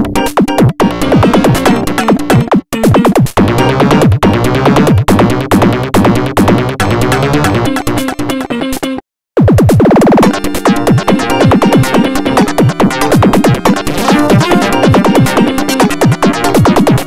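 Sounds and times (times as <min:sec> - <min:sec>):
electronic ringtone tune: 0:10.4 - 0:16.6.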